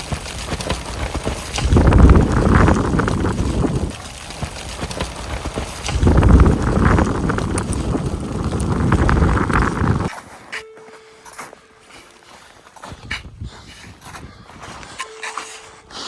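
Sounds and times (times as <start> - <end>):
wind buffeting microphone: 0.0 - 10.4, 12.8 - 15.0.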